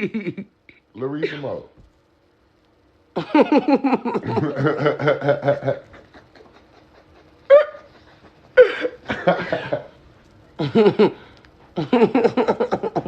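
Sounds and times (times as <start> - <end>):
person laughing: 0.0 - 0.5, 3.2 - 10.0, 10.6 - 13.0.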